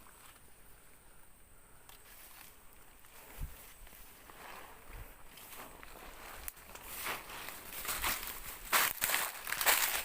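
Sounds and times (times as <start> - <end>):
footsteps in rustling grass: 2.0 - 10.0.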